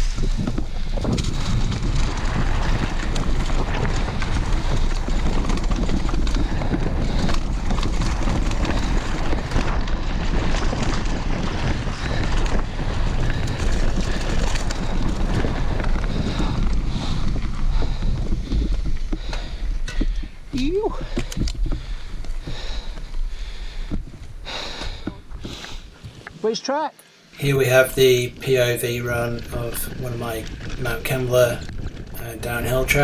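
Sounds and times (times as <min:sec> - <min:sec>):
tyre roar over dirt: 0:00.0 - 0:26.2
wind buffeting microphone: 0:00.0 - 0:26.2, 0:27.4 - 0:33.0.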